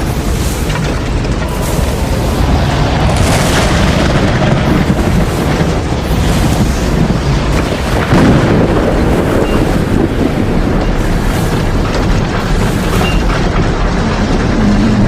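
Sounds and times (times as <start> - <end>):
deep rumble: 0.0 - 15.0
loud rush of wind: 0.0 - 15.0.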